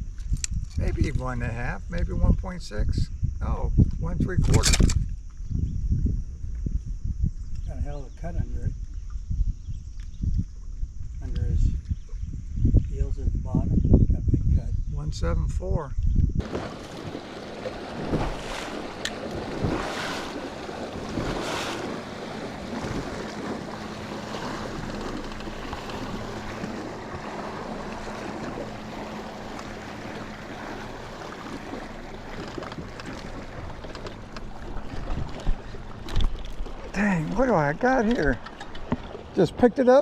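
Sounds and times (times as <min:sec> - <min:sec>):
wind on microphone: 0:00.0 - 0:40.0
faint steady hum: 0:05.0 - 0:40.0
waves lapping against boat hull: 0:16.4 - 0:40.0.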